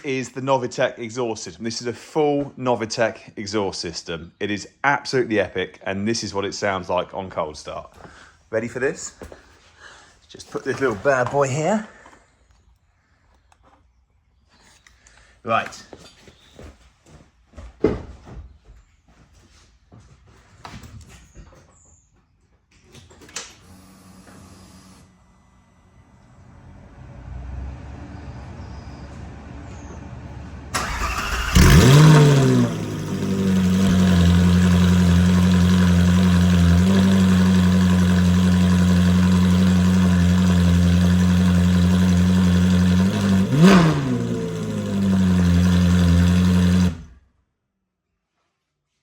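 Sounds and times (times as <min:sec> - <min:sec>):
car engine revving and idling: 0:29.8 - 0:47.2
starter cranking: 0:30.8 - 0:47.1.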